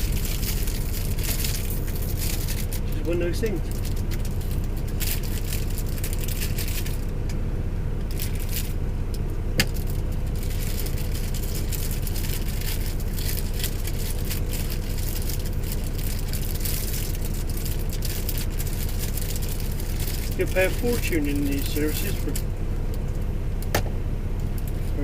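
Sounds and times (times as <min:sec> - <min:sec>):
low hum in truck cab: 0:00.0 - 0:25.0.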